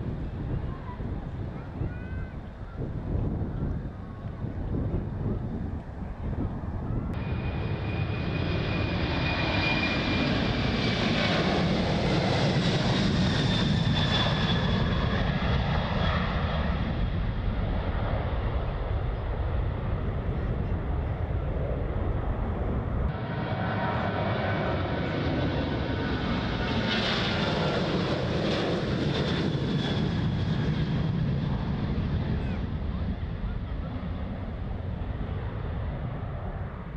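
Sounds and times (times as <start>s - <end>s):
jet engines at takeoff: 0.0s - 36.9s.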